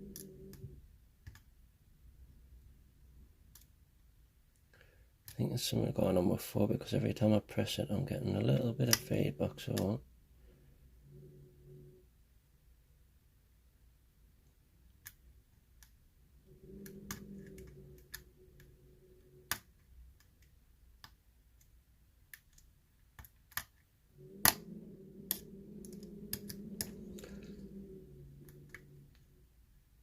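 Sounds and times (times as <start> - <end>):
low steady hum: 0.0 - 30.0.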